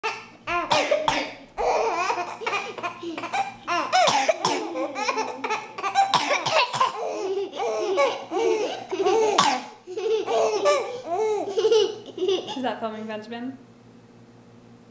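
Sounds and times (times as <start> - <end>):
baby giggling: 0.0 - 12.6
person coughing: 0.6 - 9.8.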